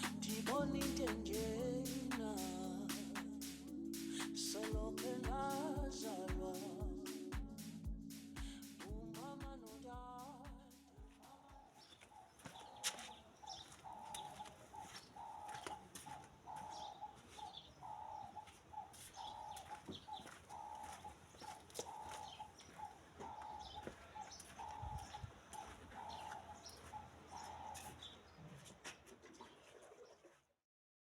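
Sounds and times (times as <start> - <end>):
faint bird calling: 11.2 - 28.2.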